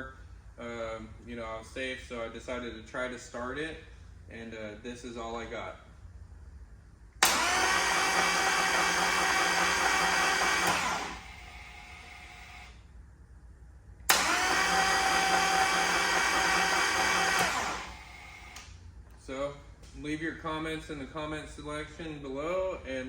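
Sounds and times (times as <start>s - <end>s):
faint steady hum: 0.0s - 7.5s
motorcycle electric starter whirring: 7.2s - 12.8s, 14.1s - 18.7s.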